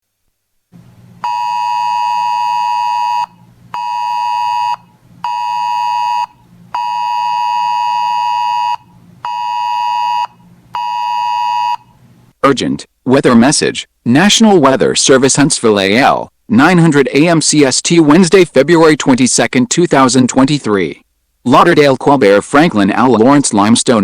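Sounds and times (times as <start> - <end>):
faint low hum: 0.2 - 23.8
alert tone beeps: 1.2 - 11.9.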